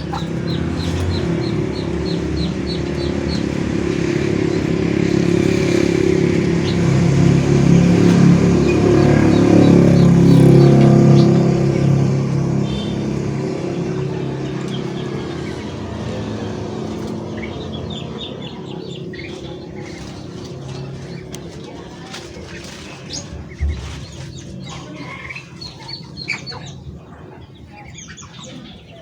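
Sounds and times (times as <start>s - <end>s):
vehicle engine running: 0.0s - 28.9s
small birds chirping: 0.0s - 29.0s.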